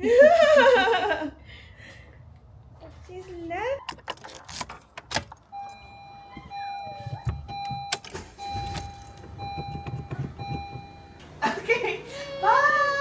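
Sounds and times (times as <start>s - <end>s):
rumbling handling noise: 2.2s - 11.4s.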